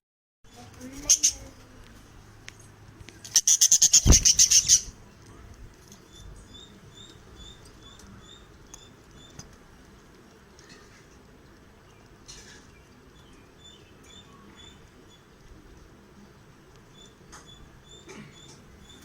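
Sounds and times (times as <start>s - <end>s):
budgerigars chirping: 1.0s - 1.5s, 3.3s - 5.0s.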